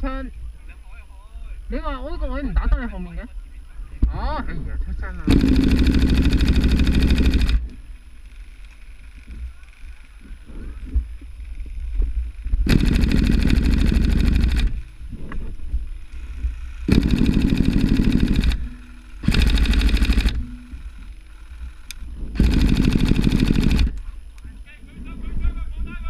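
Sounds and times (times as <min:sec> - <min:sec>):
airsoft rifle firing bursts: 0:05.3 - 0:07.7, 0:12.6 - 0:14.9, 0:16.8 - 0:20.7, 0:22.4 - 0:24.0.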